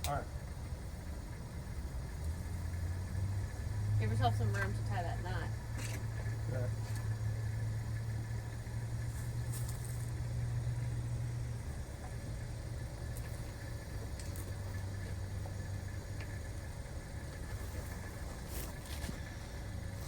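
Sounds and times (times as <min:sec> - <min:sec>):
low engine-like hum: 0:00.0 - 0:20.0.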